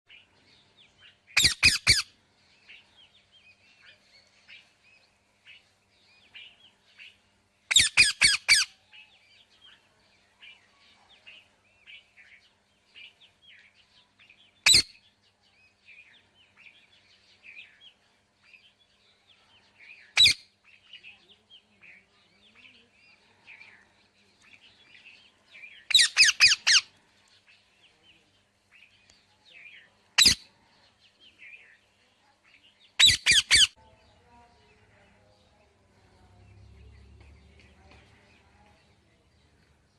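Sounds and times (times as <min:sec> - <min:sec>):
faint bird chirping: 0:00.1 - 0:39.9
parrot squawking: 0:01.4 - 0:02.1, 0:07.7 - 0:08.7, 0:25.9 - 0:26.9, 0:30.2 - 0:30.4, 0:33.0 - 0:33.8.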